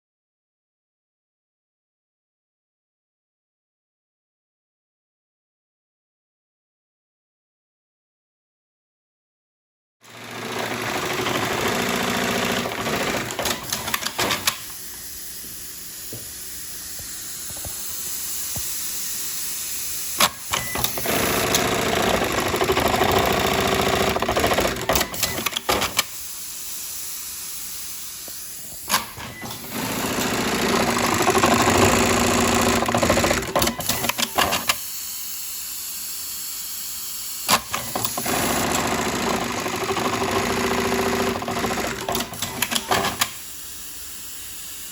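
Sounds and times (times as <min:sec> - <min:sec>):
sewing machine stitching: 0:10.0 - 0:14.8, 0:20.2 - 0:26.1, 0:28.8 - 0:34.8, 0:37.5 - 0:43.4.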